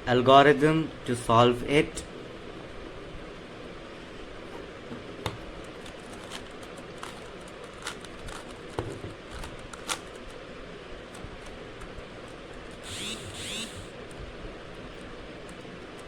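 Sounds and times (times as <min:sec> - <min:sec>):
plastic puzzle cube clicking: 0:05.6 - 0:10.4.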